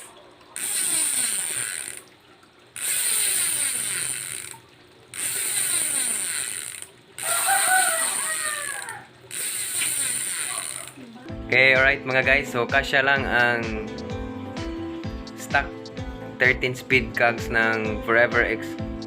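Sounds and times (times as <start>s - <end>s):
bicycle freehub ratcheting: 0.0s - 2.1s, 2.8s - 11.1s.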